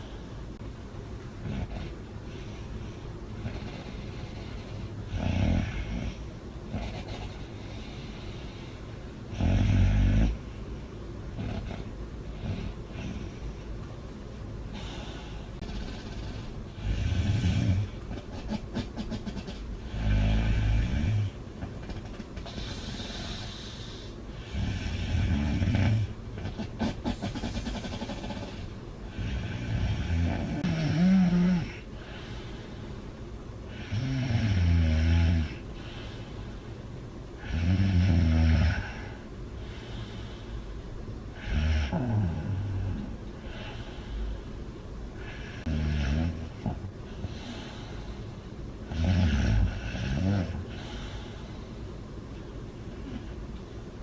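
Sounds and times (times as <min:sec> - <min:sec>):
woman breathing softly: 0:01.9 - 0:09.0, 0:14.6 - 0:18.0, 0:22.4 - 0:25.3, 0:31.6 - 0:34.0, 0:35.6 - 0:36.9, 0:38.7 - 0:41.5, 0:42.4 - 0:45.7, 0:47.0 - 0:48.7, 0:50.6 - 0:52.0
woman snoring loudly: 0:05.1 - 0:06.2, 0:15.6 - 0:18.0, 0:19.4 - 0:21.4, 0:24.4 - 0:31.8, 0:33.7 - 0:35.6, 0:37.4 - 0:39.1, 0:41.4 - 0:43.0, 0:45.2 - 0:46.5, 0:48.9 - 0:50.7.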